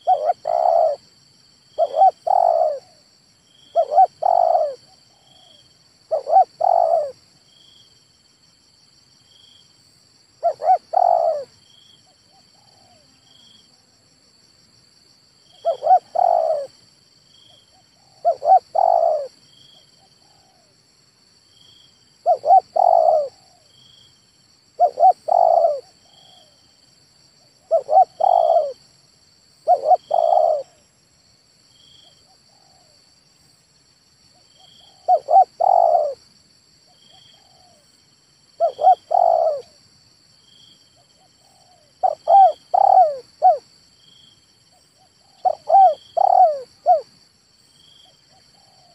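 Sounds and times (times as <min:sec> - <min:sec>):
dove cooing: 0:00.0 - 0:01.1, 0:01.8 - 0:03.1, 0:03.7 - 0:07.2, 0:10.4 - 0:11.5, 0:12.5 - 0:13.3, 0:15.5 - 0:16.8, 0:17.7 - 0:20.7, 0:22.2 - 0:23.7, 0:24.8 - 0:26.6, 0:27.4 - 0:28.8, 0:29.6 - 0:30.8, 0:34.5 - 0:36.2, 0:37.0 - 0:37.9, 0:38.6 - 0:39.8, 0:41.2 - 0:43.7, 0:45.0 - 0:47.1, 0:48.3 - 0:48.9.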